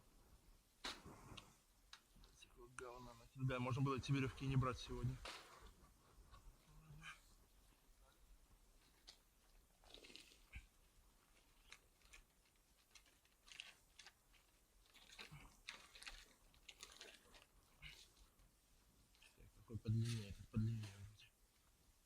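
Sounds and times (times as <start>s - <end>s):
climbing rope and gear rustling: 4.9s - 21.2s.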